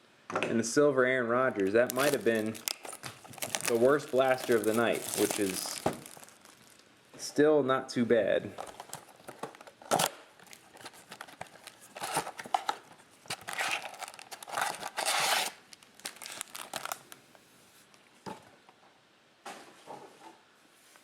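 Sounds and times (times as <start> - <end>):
plastic packaging crinkling and tearing: 1.6 - 6.9, 8.5 - 17.3.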